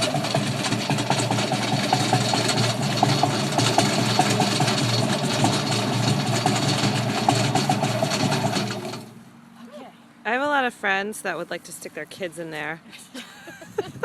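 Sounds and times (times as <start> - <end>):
tree shaker motor rattling: 0.0 - 9.2.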